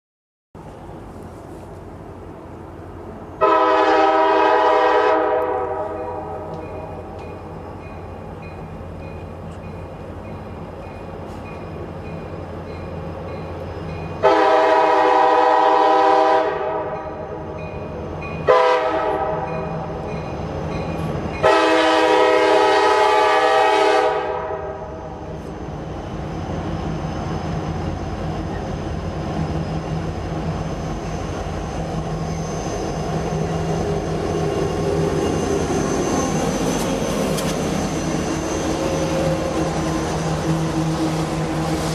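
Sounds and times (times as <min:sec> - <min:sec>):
low locomotive drone: 0:00.6 - 0:41.9
locomotive air horn blasts: 0:03.4 - 0:06.5, 0:14.2 - 0:17.0, 0:18.4 - 0:19.5, 0:21.4 - 0:24.9.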